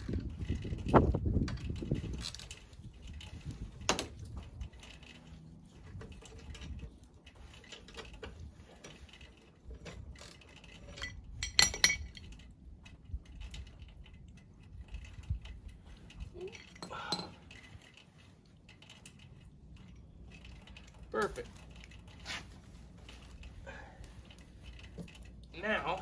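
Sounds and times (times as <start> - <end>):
metallic clinks of tools and bolts: 1.5 - 22.4.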